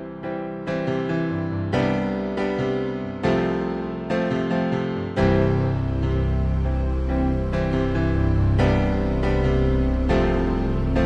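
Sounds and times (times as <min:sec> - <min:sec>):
soft piano chords: 0:00.0 - 0:11.0.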